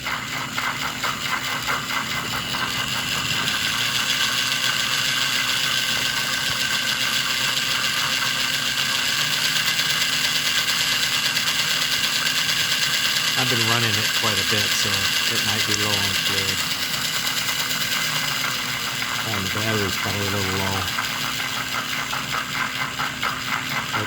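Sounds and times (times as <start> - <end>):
model steam locomotive whirring: 0.0 - 24.0.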